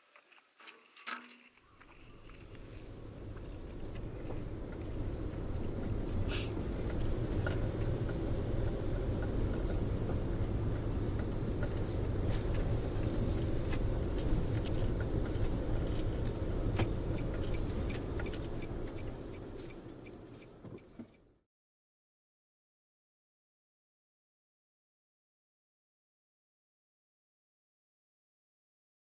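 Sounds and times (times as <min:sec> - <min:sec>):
steady low rumble: 0:01.8 - 0:21.4.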